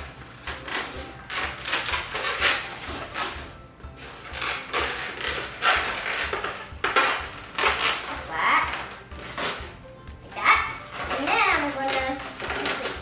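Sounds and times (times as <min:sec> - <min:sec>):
balloons rubbing together: 0:00.0 - 0:10.0
background music with low beat: 0:00.0 - 0:13.0.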